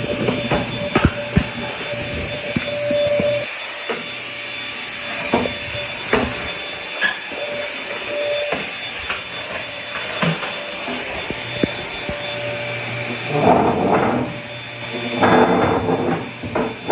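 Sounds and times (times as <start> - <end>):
vacuum cleaner whining: 0.0 - 16.9.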